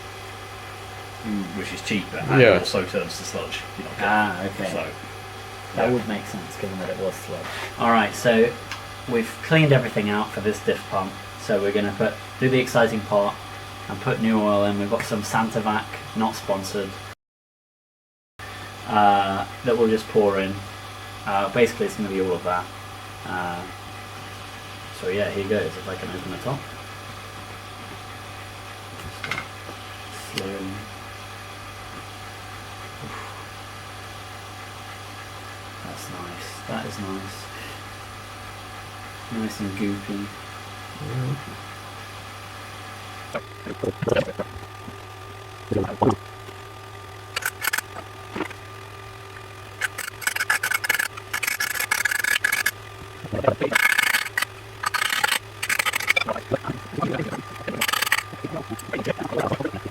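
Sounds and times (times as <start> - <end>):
low mechanical hum: 0.0 - 17.2, 18.4 - 59.9
short clicks: 47.3 - 48.6
rubbing and scraping strokes: 49.8 - 59.9.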